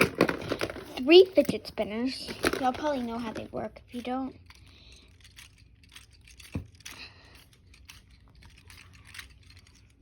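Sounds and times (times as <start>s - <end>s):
fidget spinners clicking: 2.4s - 10.0s.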